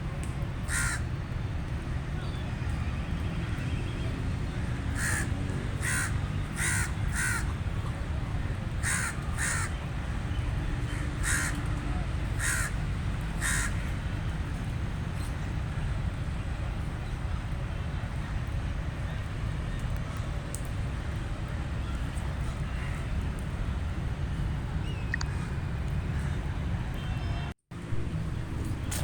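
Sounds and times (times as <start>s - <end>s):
crow cawing: 0.7s - 1.0s, 5.0s - 7.4s, 8.8s - 9.7s, 11.2s - 11.6s, 12.4s - 12.7s, 13.4s - 13.8s.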